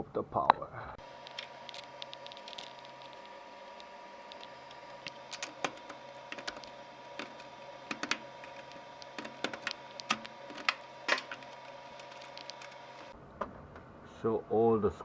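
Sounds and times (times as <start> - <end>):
faint steady hum: 0.0 - 15.0
clicks of hand tools and screws: 1.2 - 13.1.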